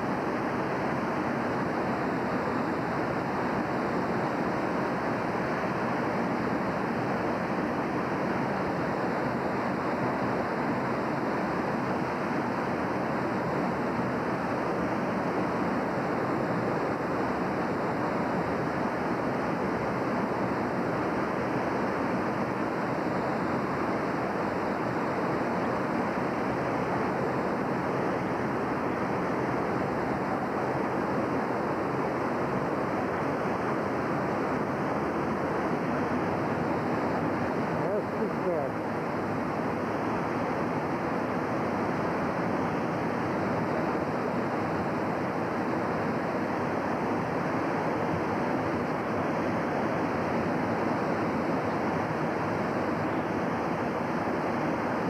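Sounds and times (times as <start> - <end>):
river rushing: 0.0 - 55.0.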